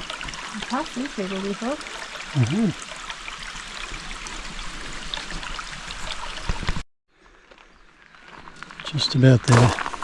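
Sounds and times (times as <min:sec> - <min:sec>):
stream water running: 0:00.0 - 0:06.8, 0:07.7 - 0:10.0.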